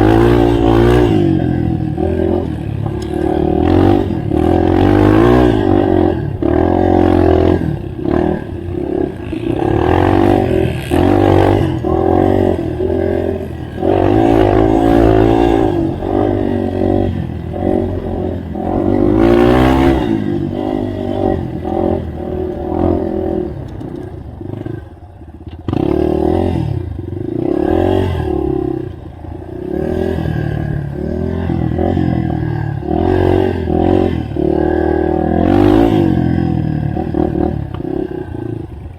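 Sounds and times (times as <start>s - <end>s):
motorbike engine revving: 0.0s - 38.9s.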